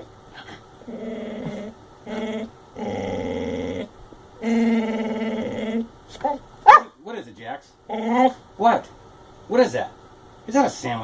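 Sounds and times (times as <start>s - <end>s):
dog growling and moaning: 0.8s - 6.4s, 7.9s - 8.4s.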